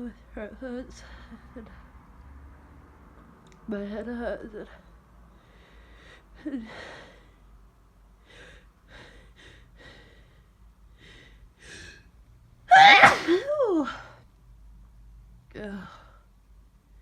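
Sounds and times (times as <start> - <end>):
loud voiced sneeze: 12.7 - 13.4.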